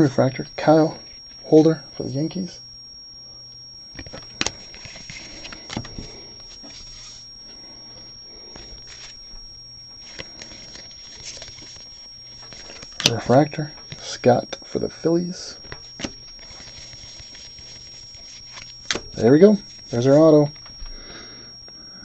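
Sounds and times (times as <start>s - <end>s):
cards sliding and rustling: 4.0s - 7.3s, 8.6s - 9.2s, 10.0s - 13.0s, 15.7s - 19.1s.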